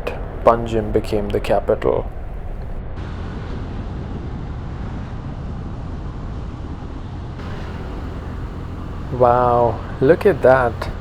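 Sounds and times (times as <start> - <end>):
road noise: 0.0 - 11.0
wind rushing past microphone: 0.0 - 11.0
motor scooter engine: 7.4 - 11.0.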